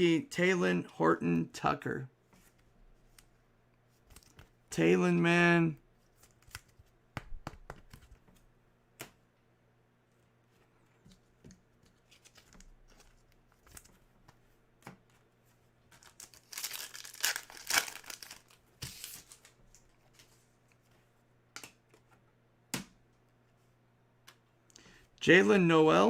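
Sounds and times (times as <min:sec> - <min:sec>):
clicks and taps handling cards: 0:06.2 - 0:08.4
card pack wrapper tearing: 0:16.0 - 0:19.5.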